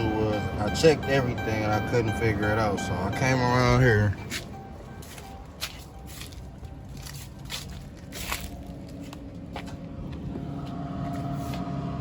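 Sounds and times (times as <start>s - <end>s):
steady low rumble: 0.0s - 12.0s
footsteps: 4.1s - 11.8s.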